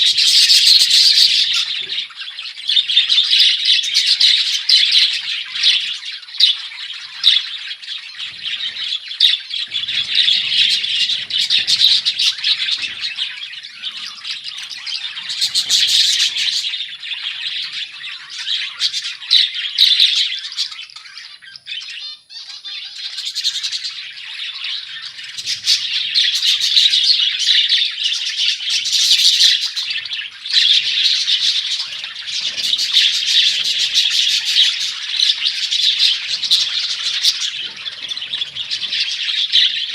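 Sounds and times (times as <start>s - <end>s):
budgerigars chattering and chirping: 0.0s - 39.9s.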